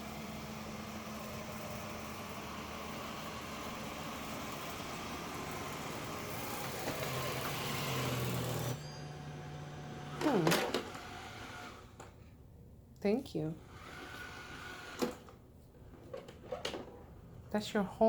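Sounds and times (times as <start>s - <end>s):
robot vacuum whirring: 0.0s - 12.1s, 13.6s - 15.4s.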